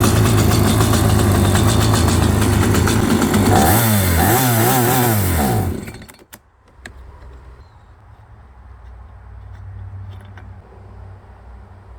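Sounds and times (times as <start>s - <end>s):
chainsaw revving: 0.0s - 6.3s.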